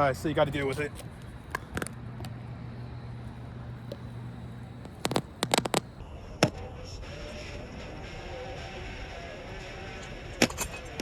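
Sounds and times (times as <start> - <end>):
low steady hum: 0.0 - 6.1
sharp crackles and pops: 3.8 - 6.0.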